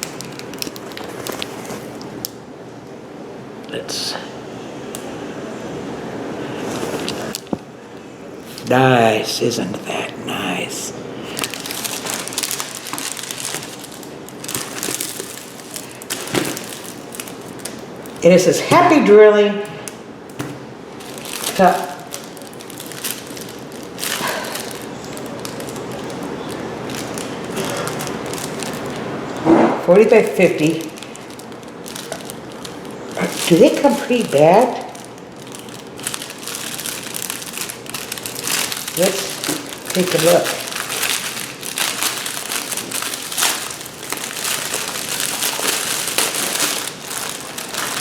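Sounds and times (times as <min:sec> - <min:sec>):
packaging rustling: 0:00.0 - 0:02.4, 0:06.4 - 0:07.7, 0:11.2 - 0:19.1, 0:19.8 - 0:48.0
plastic bags crinkling: 0:00.0 - 0:02.4, 0:06.4 - 0:09.2, 0:09.8 - 0:48.0.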